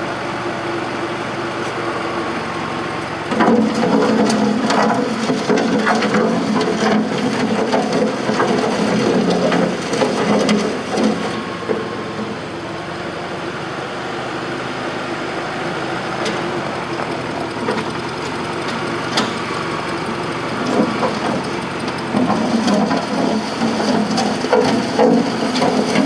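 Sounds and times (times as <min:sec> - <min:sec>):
loader engine running: 0:00.0 - 0:26.0
crunching rattling and knocking: 0:03.3 - 0:11.9, 0:16.3 - 0:26.0.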